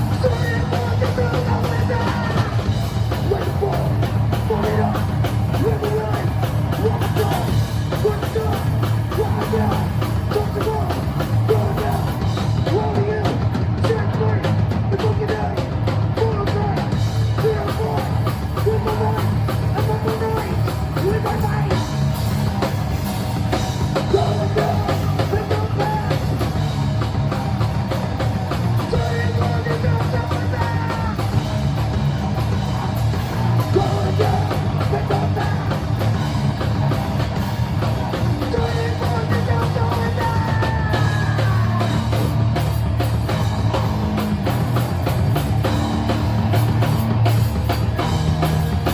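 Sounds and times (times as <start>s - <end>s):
drum kit: 0.0s - 48.9s
heavy rock band playing: 0.0s - 48.9s
person yelling vocals: 0.1s - 2.6s, 3.2s - 21.8s, 24.1s - 26.3s, 28.9s - 31.4s, 33.7s - 35.8s, 38.5s - 42.2s.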